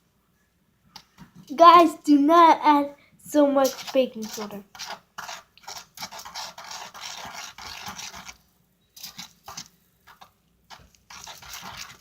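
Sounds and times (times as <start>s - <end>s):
stirring scraping on tin foil: 3.4s - 12.0s.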